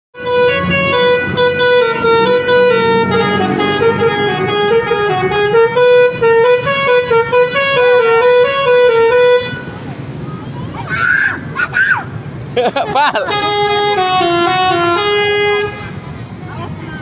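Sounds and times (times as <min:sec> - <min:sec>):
multi-tone bus air horn tune: 0:00.2 - 0:09.9, 0:12.9 - 0:16.2.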